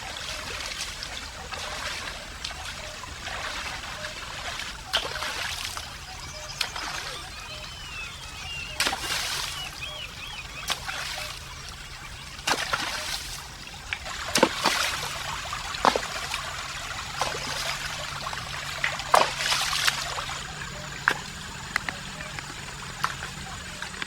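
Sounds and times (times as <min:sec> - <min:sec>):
stream water trickling: 0:00.0 - 0:24.0
water splashes: 0:00.0 - 0:24.0.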